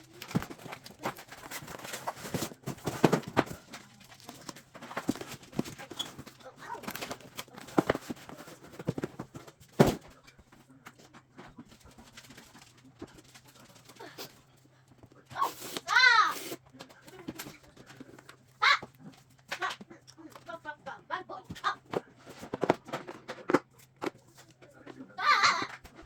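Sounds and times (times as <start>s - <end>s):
packaging rustling: 0.0s - 10.0s.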